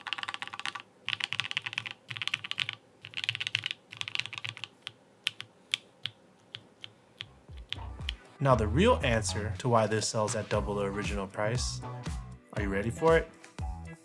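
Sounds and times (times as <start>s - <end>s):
mechanical keyboard typing: 0.0s - 8.3s.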